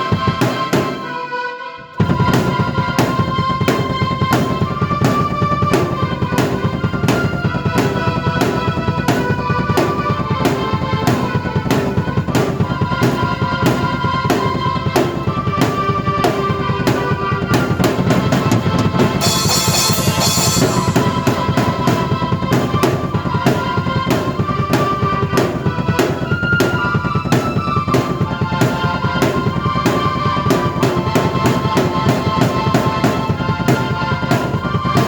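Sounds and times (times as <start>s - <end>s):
bass drum and snare beat: 2.0s - 35.0s
cymbal wash: 19.2s - 23.0s.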